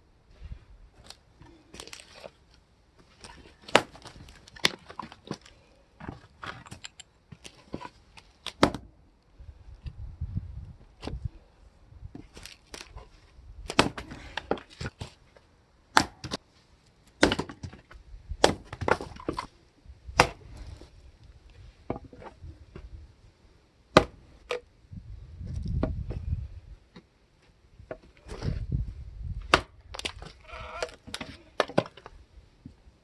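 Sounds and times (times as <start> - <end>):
logs cracking and splitting: 0.9 - 8.9, 12.1 - 16.4, 17.1 - 22.9, 23.9 - 24.6, 29.3 - 32.2.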